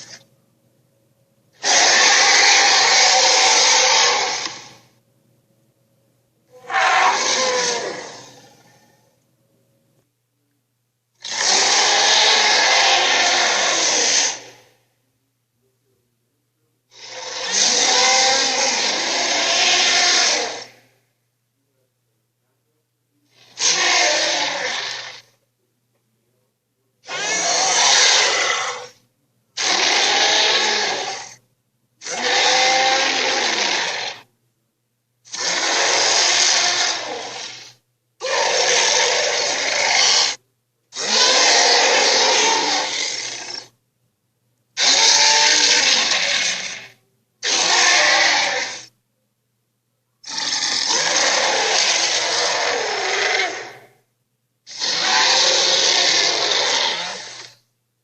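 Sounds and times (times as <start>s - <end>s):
harsh grating dinosaur screech: 0.0s - 0.2s, 1.6s - 4.8s, 6.5s - 9.0s, 11.2s - 14.7s, 16.9s - 20.8s, 23.3s - 25.4s, 27.0s - 29.0s, 29.6s - 31.4s, 32.0s - 34.3s, 35.3s - 40.4s, 41.0s - 43.7s, 44.8s - 48.9s, 50.2s - 53.9s, 54.7s - 57.6s.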